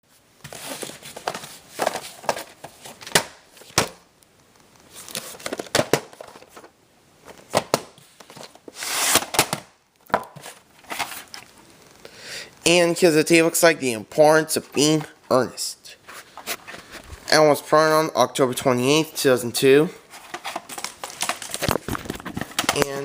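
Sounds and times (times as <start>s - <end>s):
plastic rustle: 0.4s - 3.8s, 4.7s - 9.4s, 20.0s - 23.0s.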